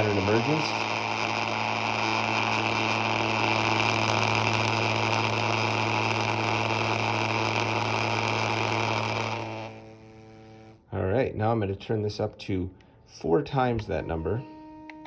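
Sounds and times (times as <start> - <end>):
loud test tone: 0.0 - 10.8
plastic lid buzzing: 0.0 - 10.8, 14.0 - 15.0.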